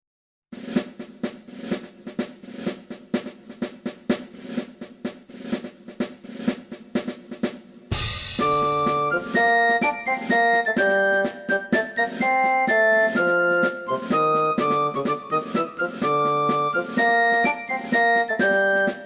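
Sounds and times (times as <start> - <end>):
snare drum beat: 0.6 - 19.0
keyboard music: 8.3 - 19.0.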